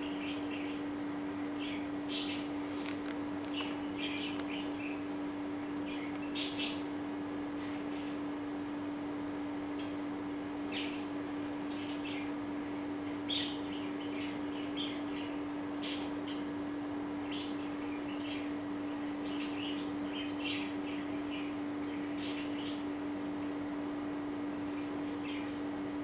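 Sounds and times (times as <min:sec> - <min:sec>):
steady low hum: 0:00.0 - 0:26.0
small animals chirping: 0:01.5 - 0:02.5, 0:03.4 - 0:05.1, 0:05.7 - 0:06.9.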